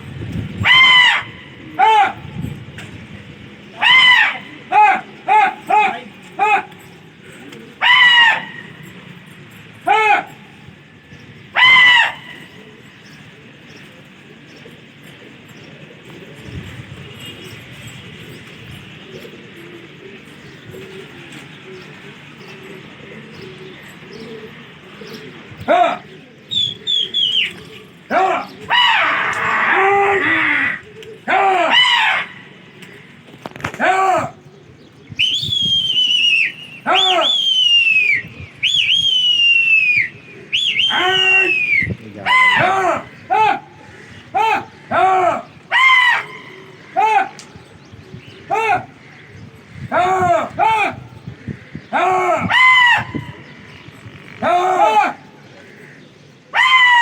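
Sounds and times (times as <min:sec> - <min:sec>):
pigeons cooing: 0:00.0 - 0:57.0
loud high rising and falling call: 0:00.6 - 0:02.2, 0:26.5 - 0:32.6, 0:35.2 - 0:43.6, 0:56.5 - 0:57.0
man whistling: 0:26.5 - 0:27.7, 0:35.2 - 0:42.0.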